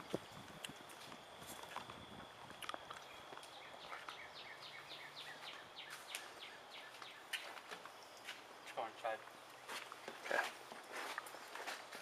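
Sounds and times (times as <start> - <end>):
songbird whistling: 3.1 - 7.4.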